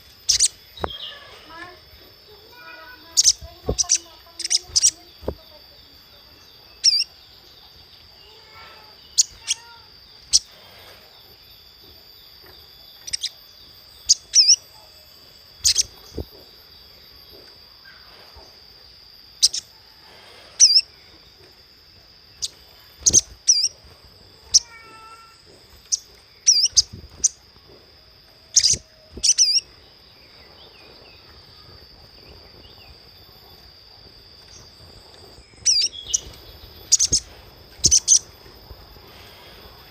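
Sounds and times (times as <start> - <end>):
high-pitched whine: 0.0 - 39.9
bird chip calls: 0.2 - 1.8, 2.5 - 5.4, 6.7 - 7.2, 8.0 - 10.5, 12.6 - 14.9, 15.6 - 16.2, 19.4 - 19.8, 20.6 - 20.9, 22.3 - 27.5, 28.4 - 31.6, 34.5 - 38.4.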